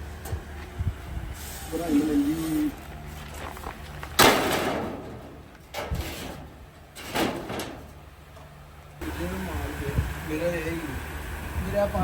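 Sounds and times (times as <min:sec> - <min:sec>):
sheet metal clanging: 0:04.2 - 0:08.1.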